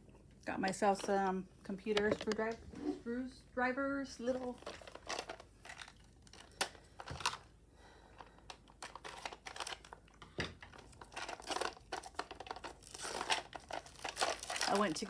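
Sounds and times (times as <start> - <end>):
plastic packaging crinkling and tearing: 4.2 - 15.0.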